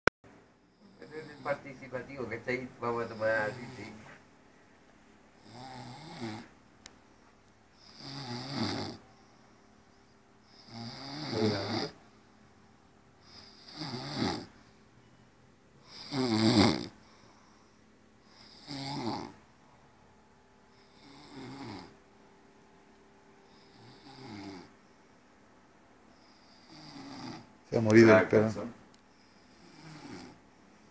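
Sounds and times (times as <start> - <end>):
person snoring: 0.8 - 1.8, 5.4 - 6.5, 7.8 - 9.0, 10.5 - 12.0, 13.2 - 14.5, 15.8 - 17.0, 18.3 - 19.4, 20.8 - 21.9, 23.5 - 24.7, 26.3 - 27.5, 29.5 - 30.4.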